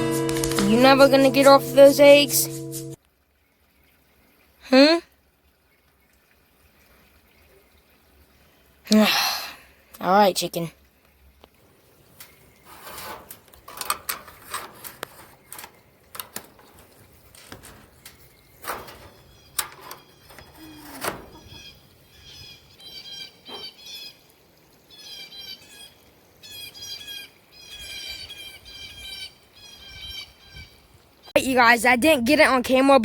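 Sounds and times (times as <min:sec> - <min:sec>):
songbird chirping: 0:15.3 - 0:31.6.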